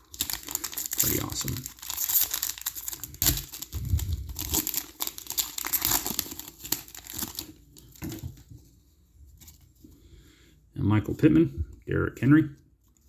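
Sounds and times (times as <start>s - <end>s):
foil wrapper crinkling and tearing: 0.0s - 8.3s.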